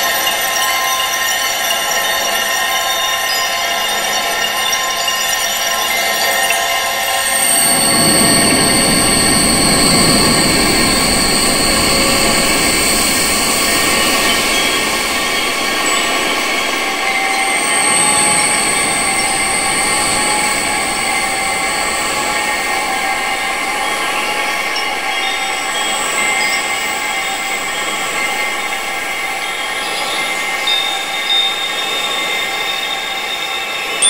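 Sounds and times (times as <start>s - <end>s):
high-pitched ringing tones: 0.0s - 34.0s
wind noise: 6.4s - 33.2s.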